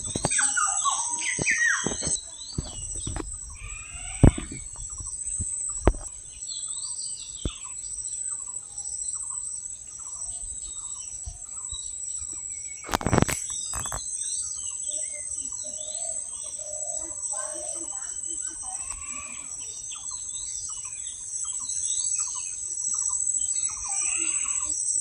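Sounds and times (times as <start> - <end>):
high-pitched insect drone: 0.0 - 6.2, 12.8 - 25.0
birds chirping: 0.0 - 25.0
sharp clicks: 12.8 - 14.0.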